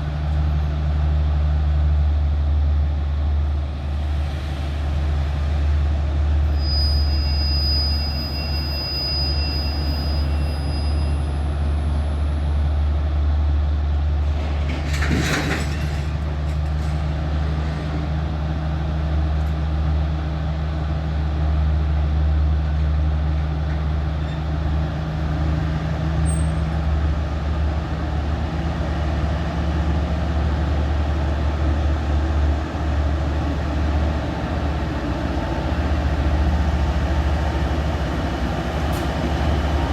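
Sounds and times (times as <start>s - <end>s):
locomotive engine humming: 0.0s - 39.9s.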